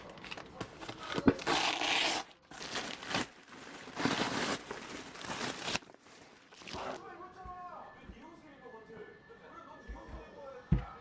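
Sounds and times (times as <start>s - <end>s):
material rustling and crinkling: 0.0s - 7.1s.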